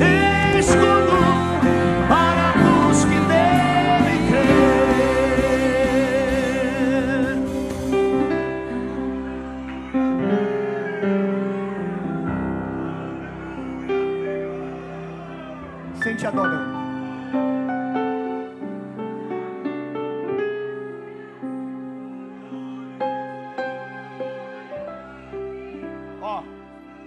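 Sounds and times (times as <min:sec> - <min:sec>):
person singing with vibrato: 0:00.0 - 0:08.9
sustained instrumental chords: 0:00.0 - 0:27.0.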